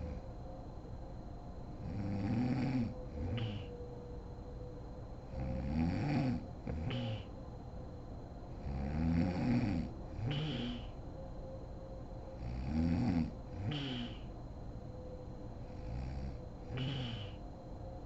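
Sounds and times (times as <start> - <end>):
woman snoring: 1.9 - 3.7, 5.4 - 7.3, 8.8 - 10.9, 12.6 - 14.2, 15.8 - 17.4.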